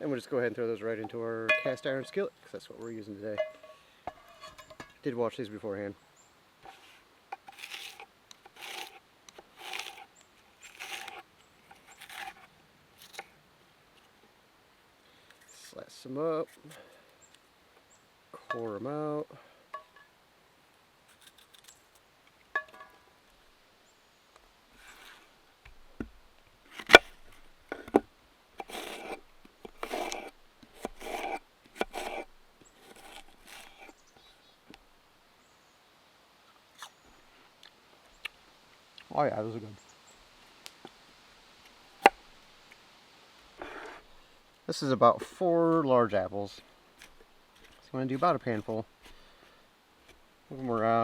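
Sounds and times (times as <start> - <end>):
knife slicing crisp apple: 7.5 - 13.4, 26.7 - 28.0, 28.6 - 34.0.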